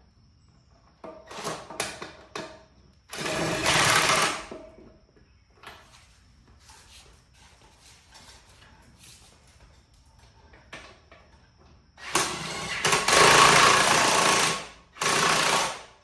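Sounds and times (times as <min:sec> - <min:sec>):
power tool running bolts: 0:03.1 - 0:04.5, 0:12.0 - 0:15.9.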